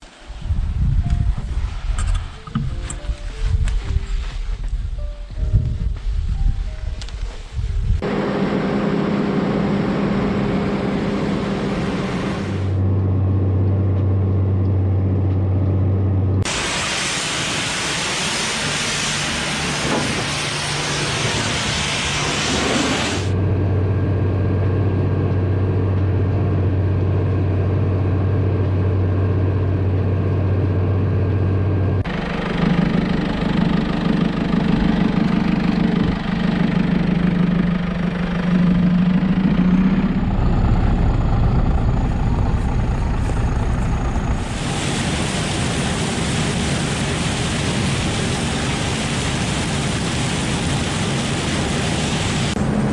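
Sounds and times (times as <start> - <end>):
heavy machinery engine running: 7.9 - 52.9
loud hiss: 16.4 - 23.3, 44.3 - 52.6.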